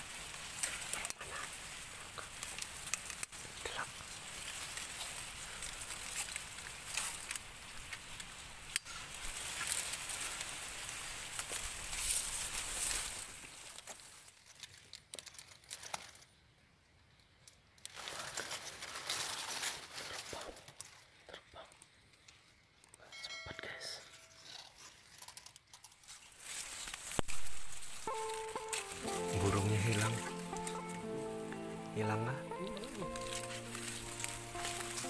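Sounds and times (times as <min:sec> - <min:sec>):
rustling and crinkling: 0:00.0 - 0:23.0, 0:24.1 - 0:35.0.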